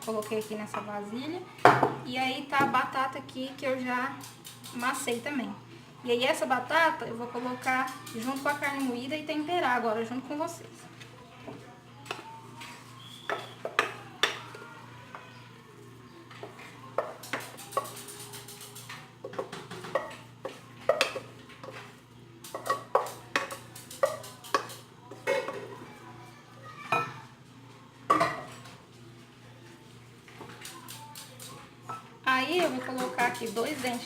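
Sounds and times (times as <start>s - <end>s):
spoon clinking against a bowl: 22.5s - 25.6s.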